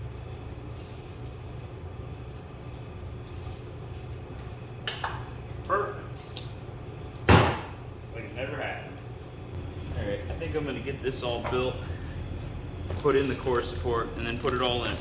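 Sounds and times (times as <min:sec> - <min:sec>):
steady low hum: 0:00.0 - 0:15.0
loud sharp bang: 0:07.3 - 0:07.8.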